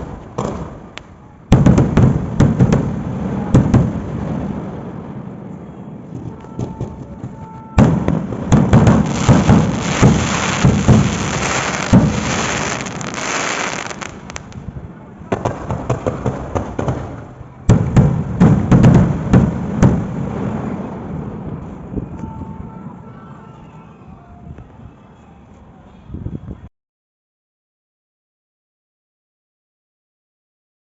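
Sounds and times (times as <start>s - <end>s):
fireworks bangs and crackle: 0.0s - 23.1s.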